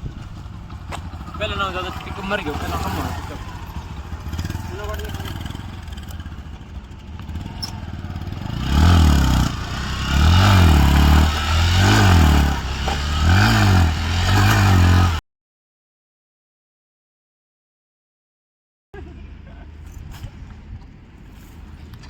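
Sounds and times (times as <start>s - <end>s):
motorcycle engine revving: 0.0s - 15.2s.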